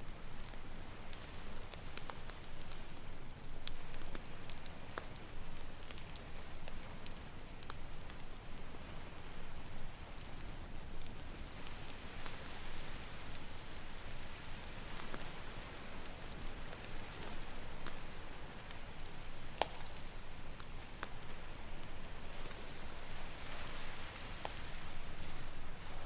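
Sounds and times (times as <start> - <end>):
campfire crackling and popping: 0.0 - 26.0
ocean waves: 20.7 - 26.0.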